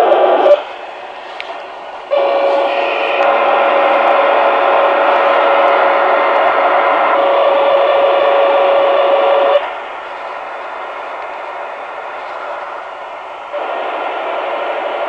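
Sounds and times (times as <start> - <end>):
radio static hiss: 0.0 - 15.0
harsh radio buzz with tone: 1.6 - 9.6.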